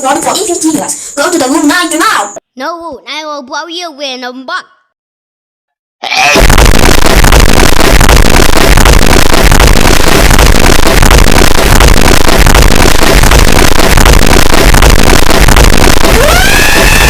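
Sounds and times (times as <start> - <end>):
harsh distorted noise: 6.2 - 17.0.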